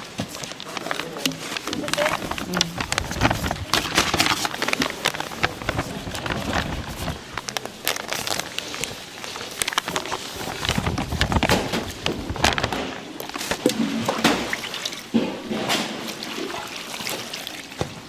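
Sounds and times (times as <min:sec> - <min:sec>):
steady noisy background: 0:00.0 - 0:18.0
clicks knocks and crackles: 0:00.2 - 0:14.5.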